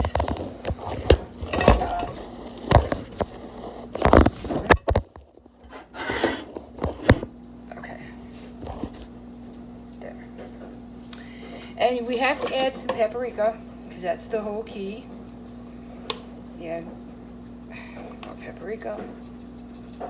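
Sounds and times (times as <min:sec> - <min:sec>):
pots and utensils clattering: 0:00.0 - 0:03.4, 0:05.6 - 0:07.3
steady low hum: 0:00.0 - 0:20.0.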